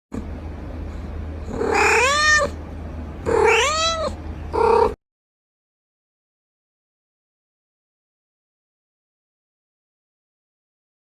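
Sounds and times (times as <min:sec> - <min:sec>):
steady low hum: 0:00.1 - 0:05.0
cat meowing: 0:01.5 - 0:02.6, 0:03.2 - 0:05.0.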